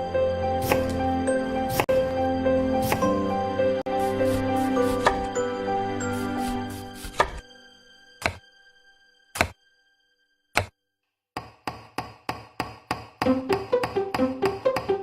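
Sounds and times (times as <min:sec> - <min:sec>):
background music: 0:00.0 - 0:10.7, 0:13.0 - 0:15.0.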